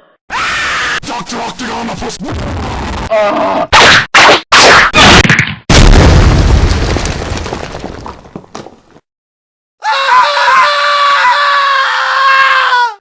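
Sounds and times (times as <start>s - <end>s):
long high-pitched scream: 9.8s - 13.0s.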